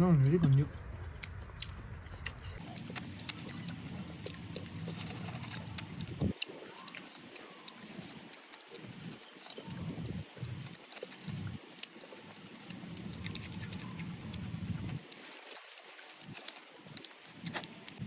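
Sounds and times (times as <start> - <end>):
person chewing: 0.8 - 18.0.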